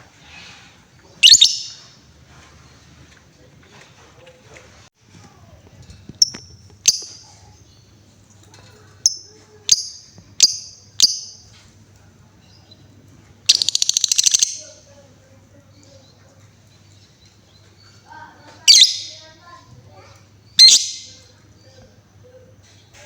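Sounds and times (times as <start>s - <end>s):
lovebird rattling trill: 1.2s - 1.8s, 9.0s - 11.4s, 13.5s - 14.8s, 18.7s - 19.2s, 20.6s - 21.2s
lovebird chirping: 1.2s - 1.9s, 9.0s - 11.6s, 13.5s - 14.9s, 18.7s - 19.3s, 20.5s - 21.3s.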